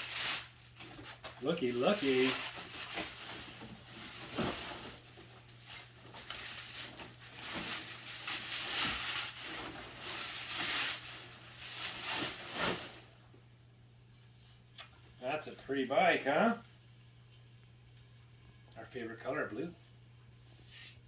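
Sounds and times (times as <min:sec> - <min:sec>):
packaging rustling and crinkling: 0:00.0 - 0:13.1.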